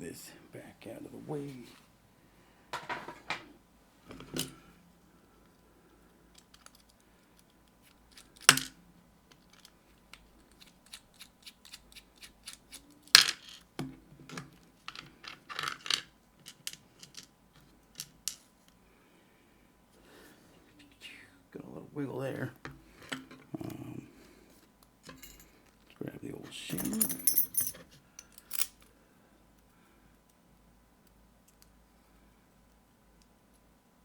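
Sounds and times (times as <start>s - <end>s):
metal clicks of lock parts: 6.3s - 8.7s.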